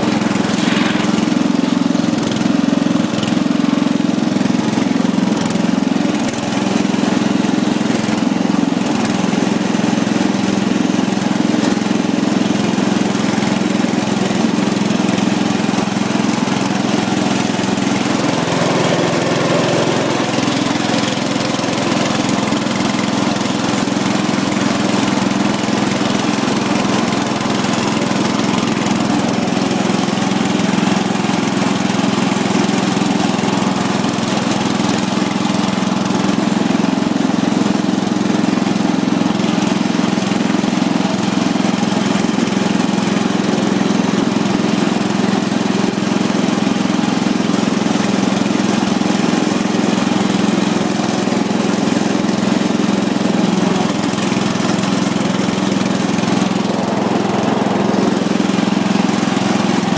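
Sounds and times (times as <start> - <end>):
riding mower engine running: 0.0 - 59.9.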